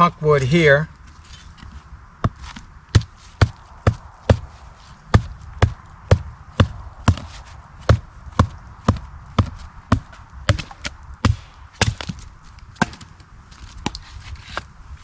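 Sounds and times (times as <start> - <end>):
blade chopping wood: 7.9 - 12.2, 12.8 - 13.1.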